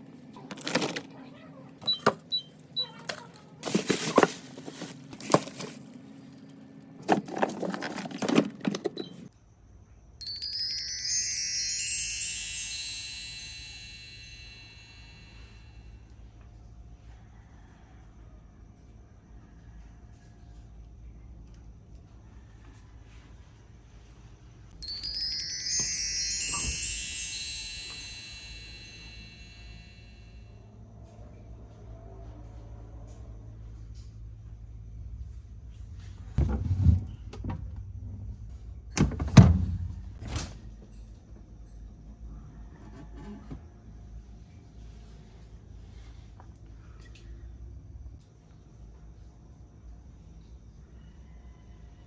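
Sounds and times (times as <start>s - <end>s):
items clattering and knocking: 0.3s - 1.2s, 3.0s - 9.3s
tinkling wind-chime sparkle effect: 10.2s - 16.2s, 24.8s - 30.7s.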